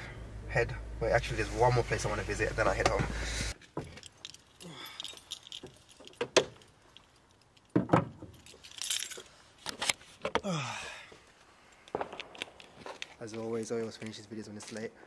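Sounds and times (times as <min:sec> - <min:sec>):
handling clicks and knocks: 0:02.8 - 0:10.4
keys jangling: 0:03.8 - 0:09.4.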